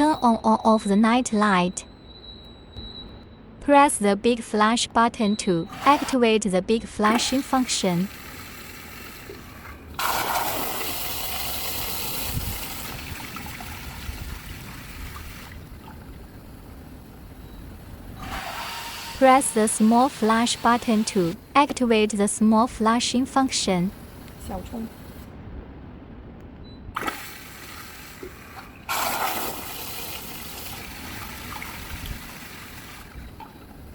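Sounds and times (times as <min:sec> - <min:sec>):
toilet flushing: 0:07.0 - 0:21.8, 0:22.5 - 0:25.2, 0:27.0 - 0:33.9.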